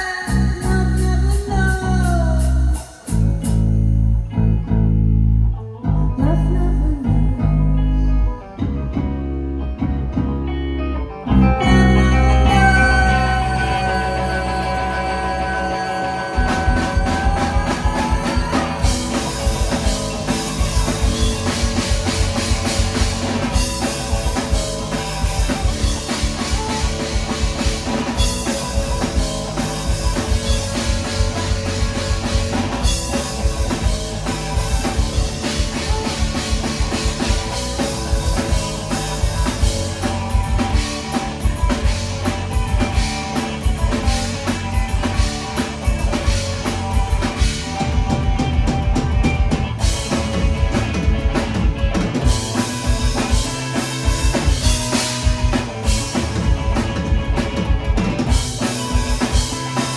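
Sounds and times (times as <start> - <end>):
live rock band playing: 0.0 - 59.9
bass drum: 16.4 - 59.9.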